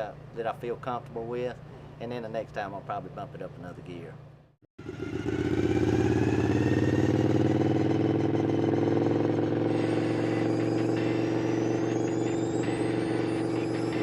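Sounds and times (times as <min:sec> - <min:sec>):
lawnmower engine running: 0:04.8 - 0:14.0
faint high whine: 0:09.7 - 0:14.0.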